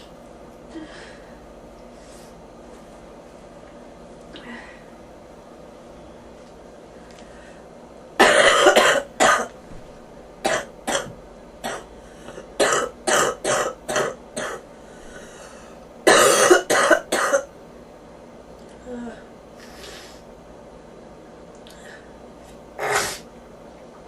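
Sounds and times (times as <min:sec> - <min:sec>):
person coughing: 0:08.2 - 0:09.5, 0:10.4 - 0:11.9, 0:12.6 - 0:14.6, 0:16.1 - 0:17.5.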